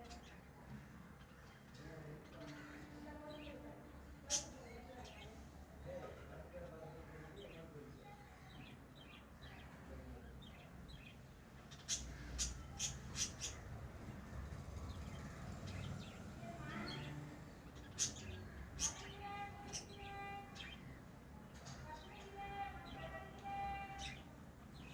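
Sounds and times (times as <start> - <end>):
lovebirds chirping: 8.5 - 24.9.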